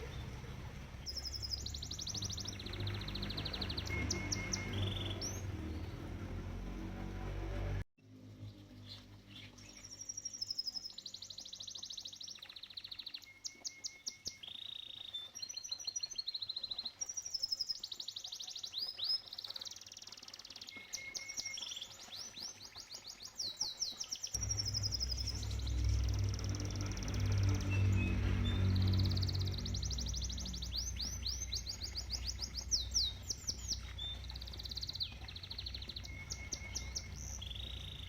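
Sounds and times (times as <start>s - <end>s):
canary singing trills: 0.0s - 6.2s, 8.8s - 38.0s
loud low sound: 24.4s - 32.6s.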